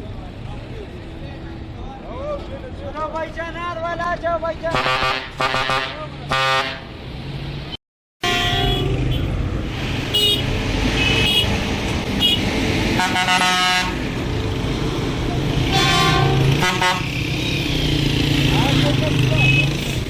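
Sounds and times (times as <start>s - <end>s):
bus horn toots and blasts: 4.7s - 6.9s, 8.2s - 9.3s, 10.1s - 11.6s, 12.2s - 12.4s, 13.0s - 14.0s, 15.6s - 17.1s.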